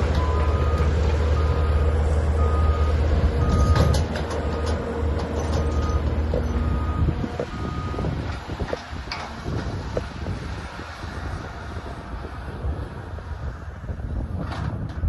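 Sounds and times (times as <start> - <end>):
excavator diesel engine: 0.0 - 15.0
backup alarm beeping: 2.4 - 3.9.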